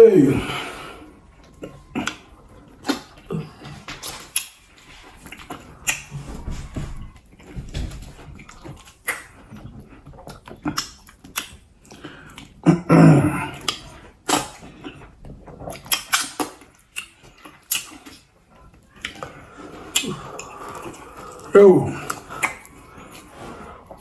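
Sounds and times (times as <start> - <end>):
throaty vocal sound: 0.0 - 1.1, 12.6 - 13.8, 19.7 - 23.6
wet chewing and lip smacks: 1.4 - 6.1, 8.3 - 12.7, 13.5 - 23.3.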